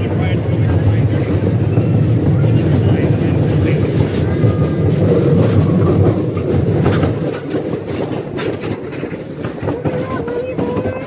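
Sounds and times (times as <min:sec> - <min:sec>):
train wheels rumbling on rails: 0:00.0 - 0:11.0
sharp clicks of wheels: 0:02.5 - 0:11.0.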